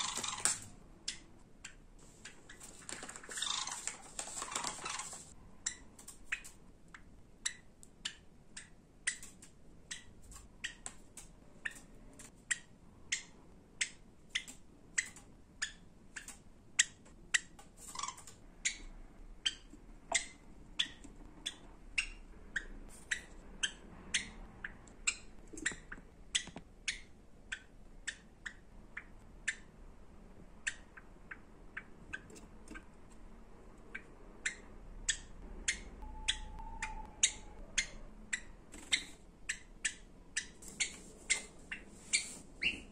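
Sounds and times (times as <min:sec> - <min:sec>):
sparrow chirping: 0:03.3 - 0:03.9, 0:11.5 - 0:29.8, 0:33.8 - 0:42.9.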